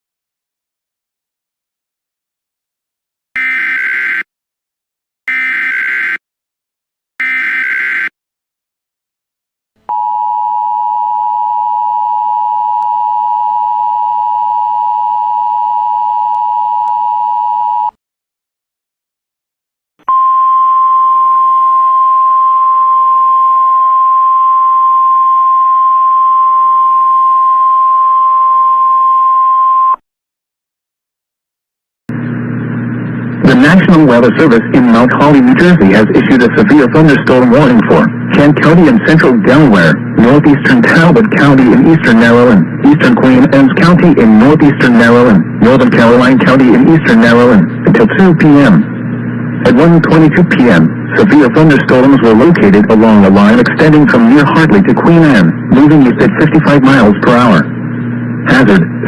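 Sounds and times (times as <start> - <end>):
two-tone attention signal: 20.1 - 30.0.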